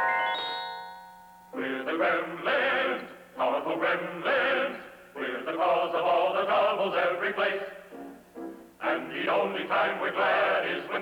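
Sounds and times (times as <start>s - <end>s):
male chorus singing: 1.6s - 7.9s, 8.8s - 11.0s.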